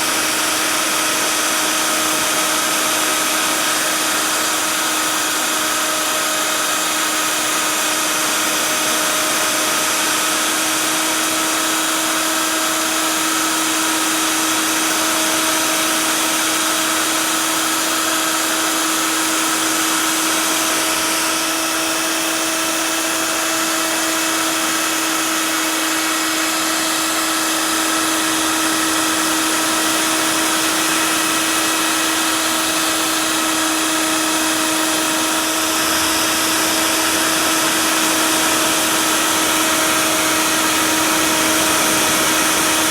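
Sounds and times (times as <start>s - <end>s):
cnc router spindle whine: 0.0s - 42.9s.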